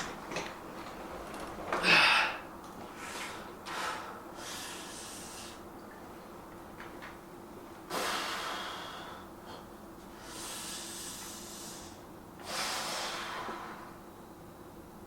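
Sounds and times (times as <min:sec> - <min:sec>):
man breathing hard: 0:01.8 - 0:05.6, 0:07.9 - 0:13.9.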